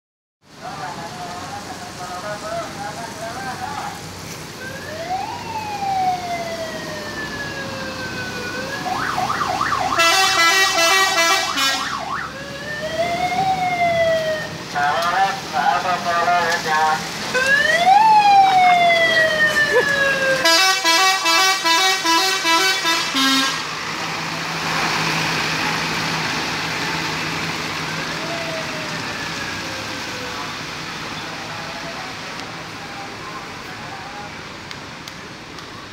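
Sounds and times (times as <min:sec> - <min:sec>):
siren whooping: 0:04.6 - 0:15.3, 0:17.3 - 0:20.8, 0:27.9 - 0:30.6
multi-tone bus horn runs: 0:10.0 - 0:12.0, 0:20.4 - 0:23.7.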